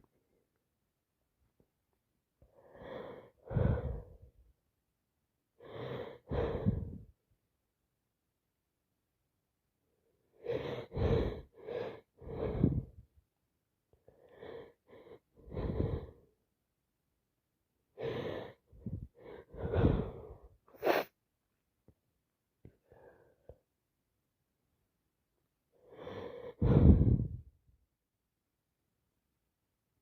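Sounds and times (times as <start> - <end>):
congested breathing and sniffling: 18.0 - 21.2.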